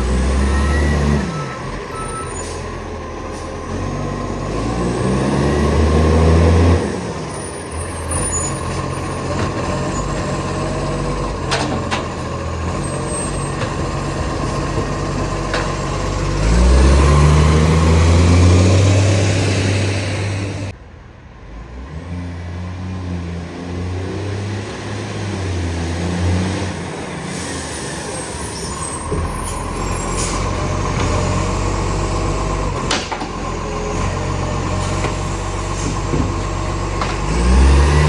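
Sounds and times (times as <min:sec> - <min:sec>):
diesel truck engine revving: 0:00.0 - 0:20.8, 0:21.4 - 0:38.0
reversing beeper: 0:00.2 - 0:02.6.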